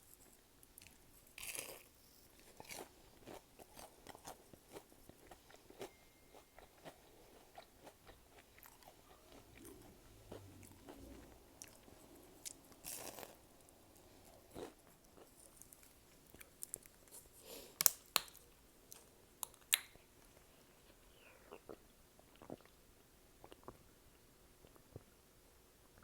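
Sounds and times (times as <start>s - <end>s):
chewing with crunching bites: 0.8s - 17.3s.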